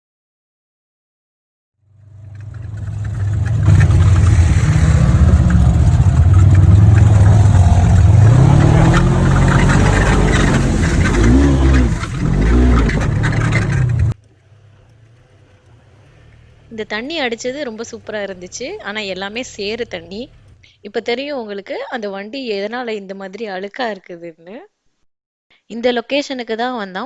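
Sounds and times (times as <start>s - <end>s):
atv engine revving: 1.9s - 20.8s
tyres churning through muddy water: 2.1s - 20.7s.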